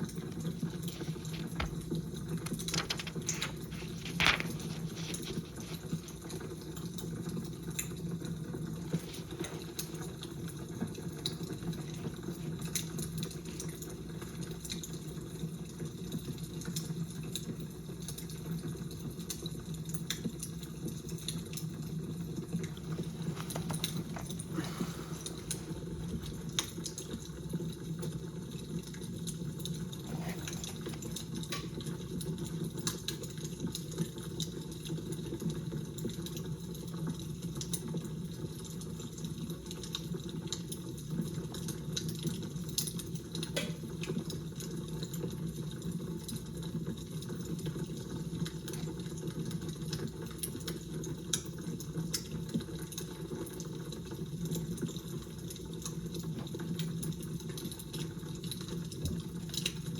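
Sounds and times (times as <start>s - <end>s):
fire crackling: 0.0s - 15.0s, 22.0s - 33.6s.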